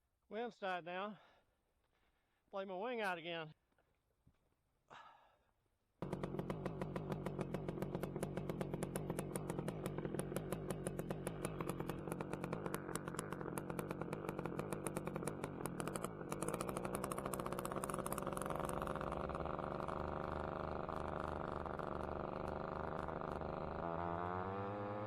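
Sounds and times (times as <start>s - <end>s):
paramotor engine idling and revving: 6.0s - 25.0s.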